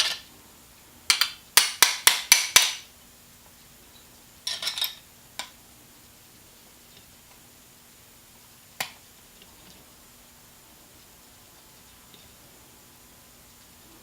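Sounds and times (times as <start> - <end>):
metal parts clicking and clinking: 4.5 - 5.0.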